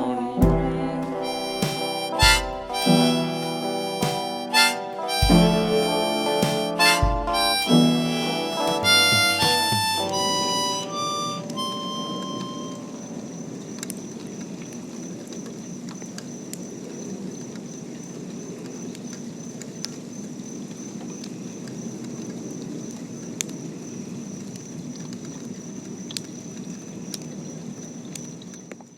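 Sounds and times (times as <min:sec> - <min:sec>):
thin high-pitched tone: 0:01.3 - 0:13.0
rain pattering: 0:12.2 - 0:28.9.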